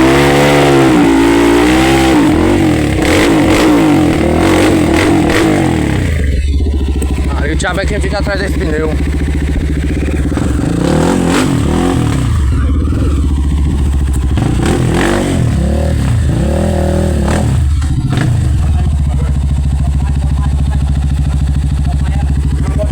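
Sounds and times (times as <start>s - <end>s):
vehicle engine labouring uphill: 0.0s - 22.9s.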